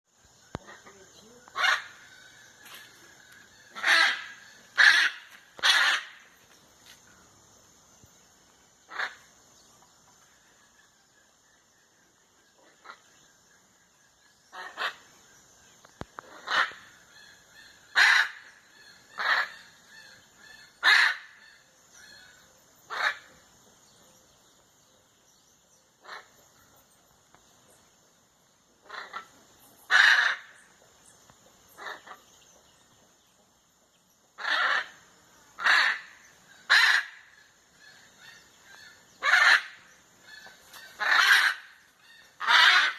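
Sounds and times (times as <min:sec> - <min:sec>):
macaws squawking: 0:00.5 - 0:06.3, 0:16.2 - 0:23.4, 0:28.8 - 0:30.6, 0:34.4 - 0:35.0, 0:35.6 - 0:42.9.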